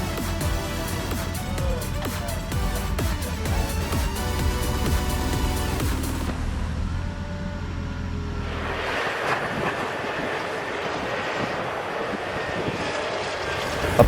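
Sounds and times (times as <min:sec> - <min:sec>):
heavy machinery engine hum: 0:00.0 - 0:10.7.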